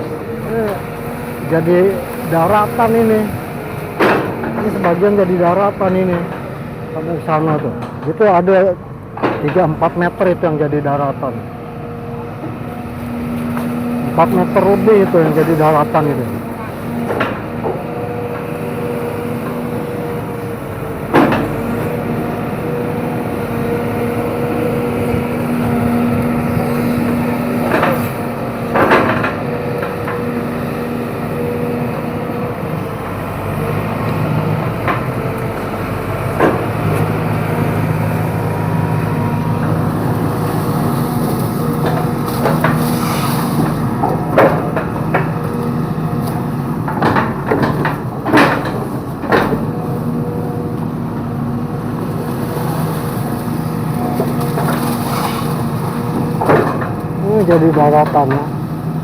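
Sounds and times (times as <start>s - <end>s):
excavator diesel engine under load: 0.0s - 59.0s
sharp cracks and knocks: 3.9s - 5.1s, 17.0s - 17.8s, 21.1s - 21.9s, 27.6s - 30.3s, 36.3s - 37.1s, 40.8s - 49.8s, 54.1s - 58.5s.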